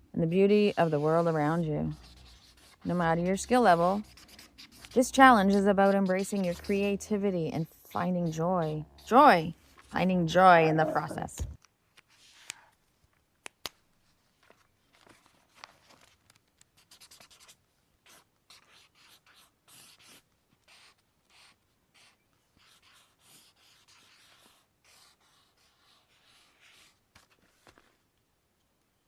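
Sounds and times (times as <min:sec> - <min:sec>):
drawing tool scratching on paper: 0:00.4 - 0:11.2, 0:16.9 - 0:27.0.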